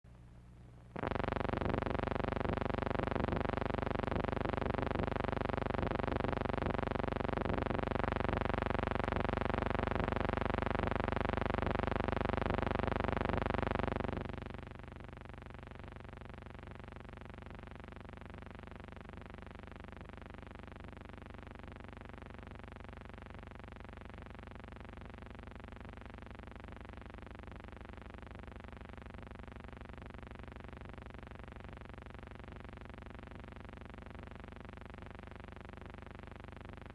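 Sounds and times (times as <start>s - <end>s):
steady drone with overtones: 1.0s - 14.5s.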